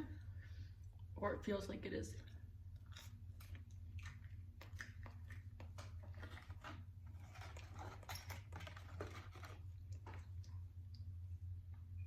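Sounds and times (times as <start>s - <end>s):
steady low hum: 0.0s - 12.0s
chewing clicks and crackles: 2.2s - 11.0s.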